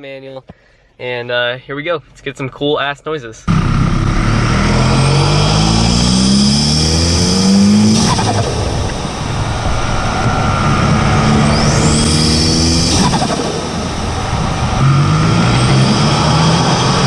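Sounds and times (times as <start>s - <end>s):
car engine revving: 3.5s - 17.0s
rush of released boost: 3.9s - 17.0s.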